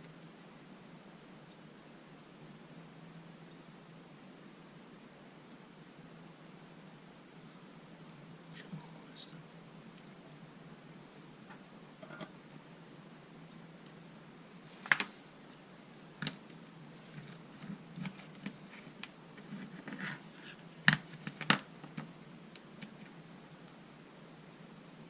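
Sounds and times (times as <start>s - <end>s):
faint steady hum: 0.0s - 25.0s
small parts clicking and knocking: 20.8s - 22.1s.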